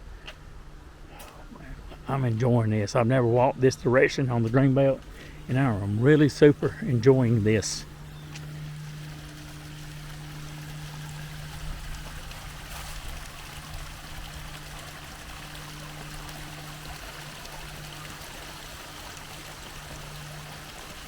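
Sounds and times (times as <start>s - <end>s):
steady low hum: 0.0s - 21.0s
stream of flowing water: 4.2s - 21.0s.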